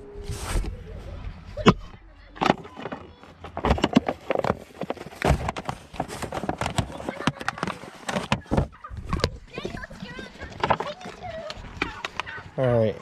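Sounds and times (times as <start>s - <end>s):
small hard parts clicking: 2.4s - 12.3s.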